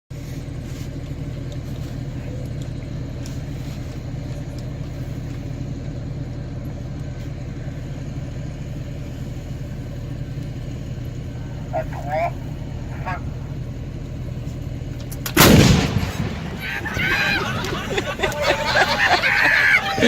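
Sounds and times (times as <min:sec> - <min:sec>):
engine droning: 0:00.1 - 0:20.0.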